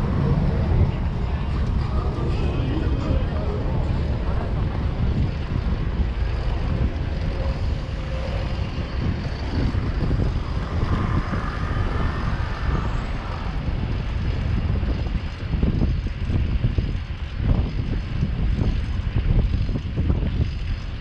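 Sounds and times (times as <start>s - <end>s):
city street traffic: 0.0s - 21.0s
wind rumbling on microphone: 0.0s - 21.0s.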